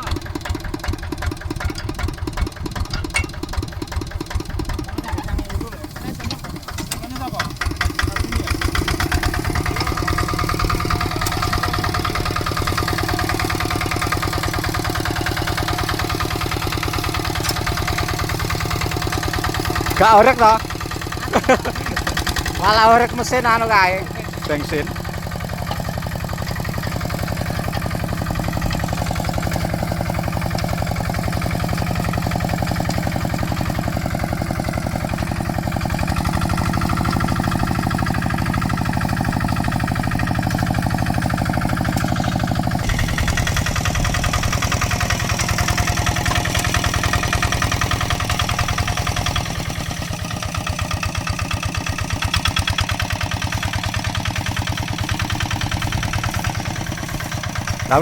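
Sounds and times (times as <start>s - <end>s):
diesel engine running: 0.0s - 58.0s.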